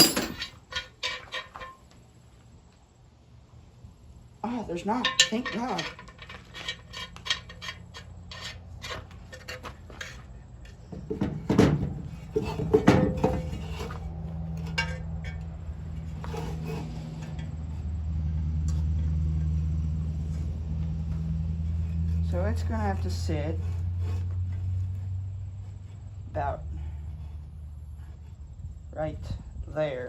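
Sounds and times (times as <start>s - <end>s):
metal parts clinking and rattling: 0.0s - 1.9s, 4.9s - 13.9s, 14.5s - 17.5s
steady low hum: 0.0s - 30.0s.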